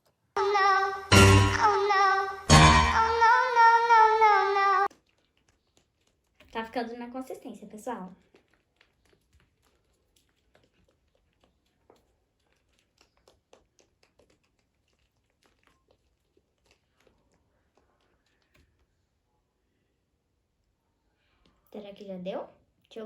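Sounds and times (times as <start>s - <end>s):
slime being shaken and stirred: 4.6s - 19.3s.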